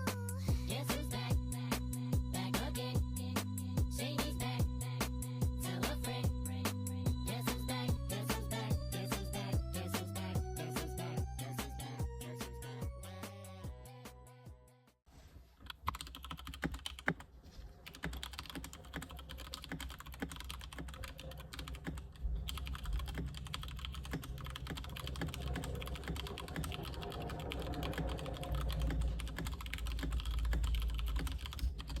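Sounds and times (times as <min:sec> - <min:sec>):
fast typing on keyboard: 0:15.7 - 0:32.0
low rumble: 0:22.2 - 0:31.8.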